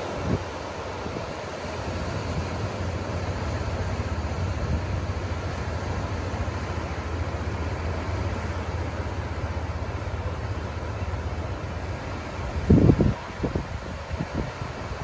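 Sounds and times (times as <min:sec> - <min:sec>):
ocean surf: 0:00.0 - 0:15.0
wind buffeting microphone: 0:11.9 - 0:15.0.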